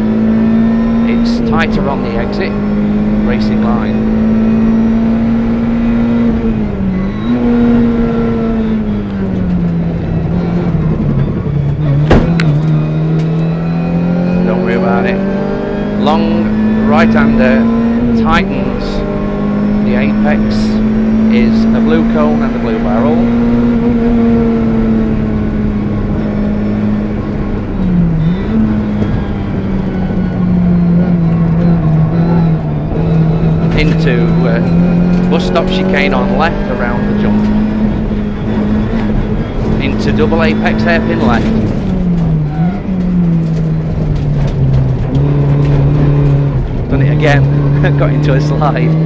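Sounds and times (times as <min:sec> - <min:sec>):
car engine running inside cabin: 0:00.0 - 0:49.0
sharp knocks: 0:12.0 - 0:12.8.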